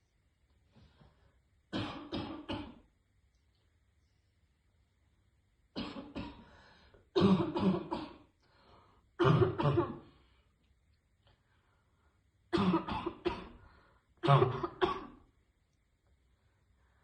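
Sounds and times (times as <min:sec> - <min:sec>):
woman coughing: 0:07.2 - 0:08.2, 0:09.2 - 0:10.0, 0:12.6 - 0:13.6, 0:14.2 - 0:15.2.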